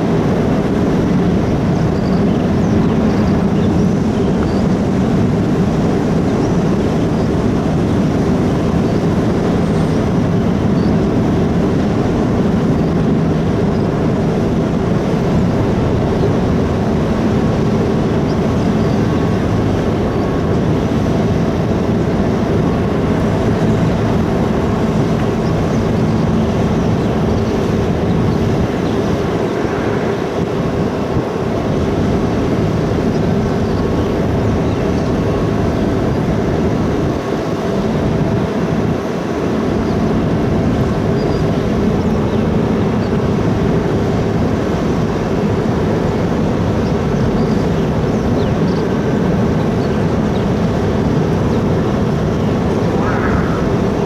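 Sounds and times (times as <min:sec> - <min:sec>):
ferry engine drone: 0:00.0 - 0:54.0
humming tones: 0:46.8 - 0:54.0.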